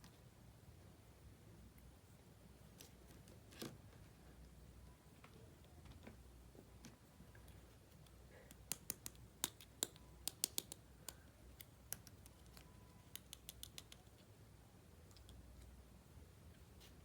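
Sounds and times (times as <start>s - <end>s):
plastic toy pieces clicking: 8.5s - 11.2s.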